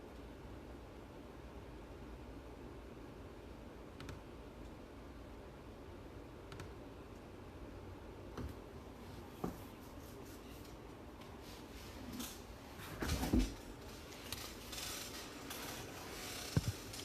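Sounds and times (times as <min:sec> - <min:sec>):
knocks and rustling: 0:12.1 - 0:17.0.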